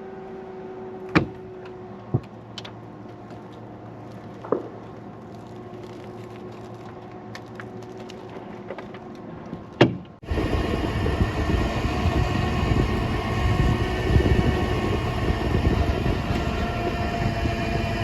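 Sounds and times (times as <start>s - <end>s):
truck idling: 10.2s - 18.0s
winch hauling wire rope: 10.2s - 18.0s.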